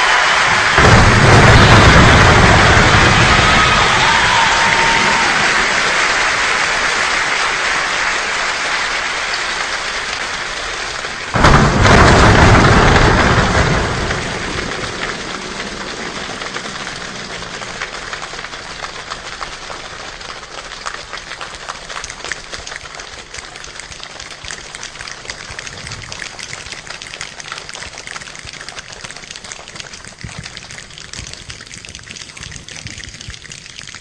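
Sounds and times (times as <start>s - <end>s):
thunderclap rumbling: 0.0s - 6.4s, 11.2s - 19.3s
heavy rain falling: 0.0s - 34.0s
raindrops: 0.0s - 34.0s.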